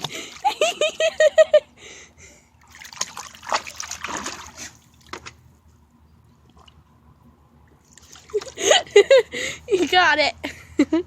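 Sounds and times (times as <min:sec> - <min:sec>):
water splashing in a pool: 0:00.0 - 0:00.8, 0:02.6 - 0:05.4, 0:07.7 - 0:08.8.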